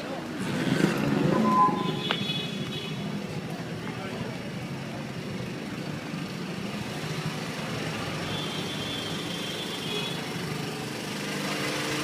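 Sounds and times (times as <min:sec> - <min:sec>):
road and traffic noise: 0:00.0 - 0:12.0.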